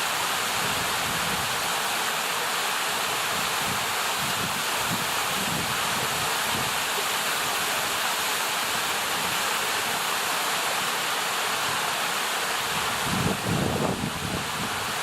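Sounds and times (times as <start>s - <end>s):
waterfall and creek rushing: 0.0s - 15.0s.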